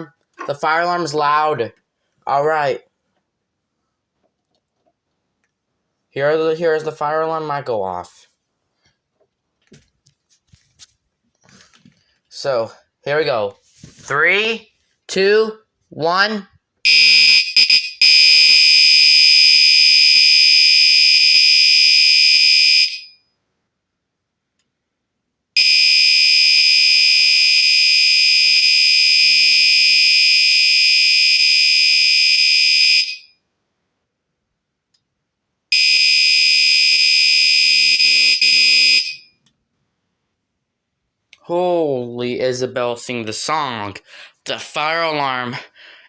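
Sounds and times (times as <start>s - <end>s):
fire alarm high-pitched tone: 16.8s - 23.4s, 25.6s - 33.4s, 35.7s - 39.4s.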